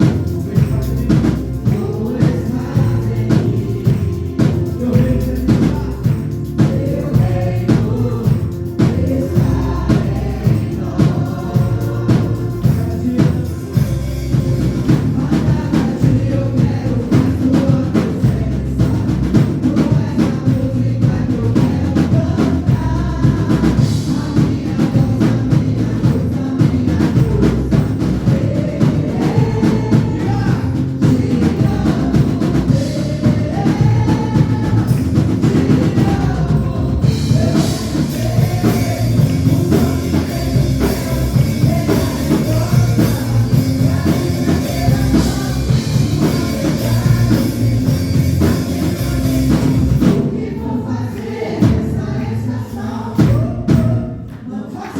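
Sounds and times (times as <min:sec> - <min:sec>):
cymbals: 0:00.0 - 0:17.4, 0:27.1 - 0:50.4
drum kit playing: 0:00.0 - 0:54.4
recorded gospel song with vocal: 0:00.0 - 0:54.9.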